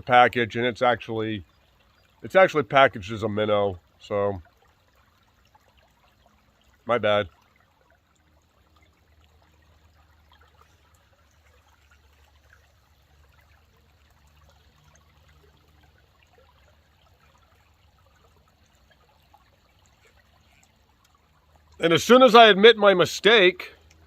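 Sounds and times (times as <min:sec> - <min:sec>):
low steady hum: 0:00.0 - 0:24.0
faint ticks: 0:23.8 - 0:24.0.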